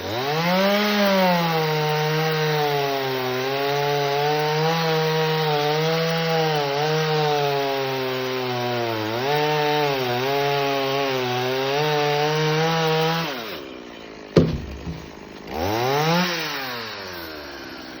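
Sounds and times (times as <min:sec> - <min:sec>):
chainsaw cutting wood: 0:00.0 - 0:18.0
sharp thump: 0:14.4 - 0:15.2.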